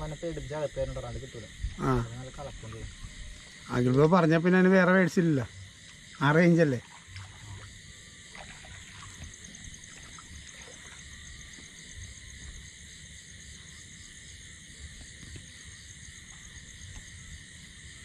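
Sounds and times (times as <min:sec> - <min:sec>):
low uneven rumble: 0:00.0 - 0:13.5
frogs: 0:00.0 - 0:18.0
high-pitched insect trills: 0:00.0 - 0:18.0.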